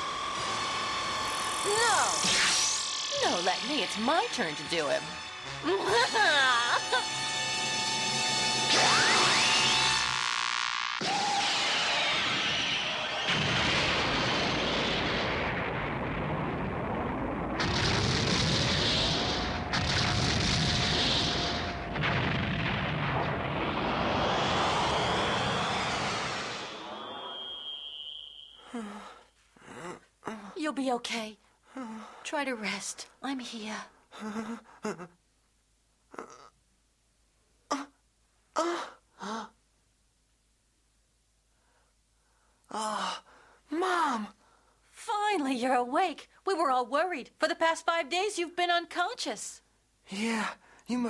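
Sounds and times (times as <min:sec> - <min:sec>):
rising whine: 0:00.0 - 0:17.6, 0:18.7 - 0:28.8
cartoon energy blasts and explosions: 0:01.6 - 0:05.0, 0:08.6 - 0:28.7
person groaning: 0:28.7 - 0:30.6, 0:34.2 - 0:35.2, 0:36.1 - 0:36.6, 0:38.6 - 0:39.6.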